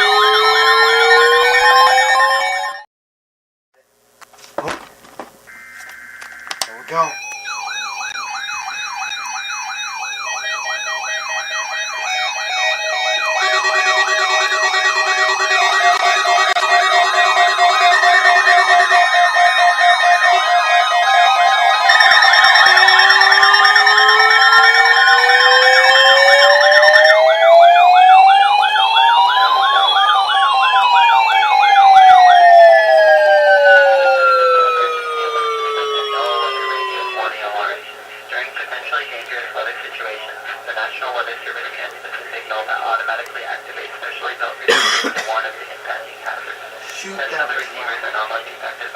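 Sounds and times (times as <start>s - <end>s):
sweeping siren-like alarm tone: 0.0s - 2.8s, 5.5s - 37.7s
electronic beep tones: 10.4s - 27.4s.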